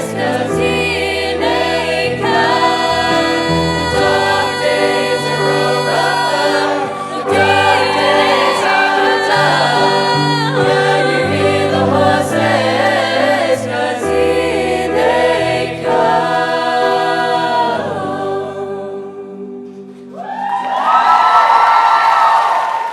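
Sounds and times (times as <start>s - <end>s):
sustained chords: 0.0s - 19.9s
choir singing pop song: 0.0s - 20.3s.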